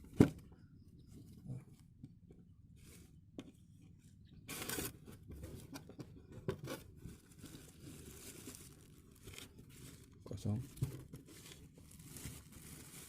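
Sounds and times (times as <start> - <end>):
packaging scraping and rustling: 4.5 - 13.0.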